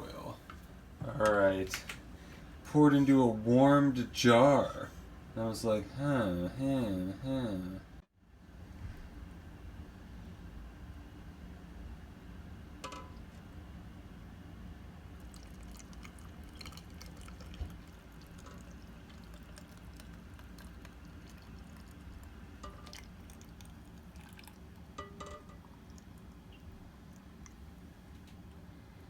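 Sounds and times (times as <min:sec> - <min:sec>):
liquid pouring into jar: 0:15.2 - 0:27.6.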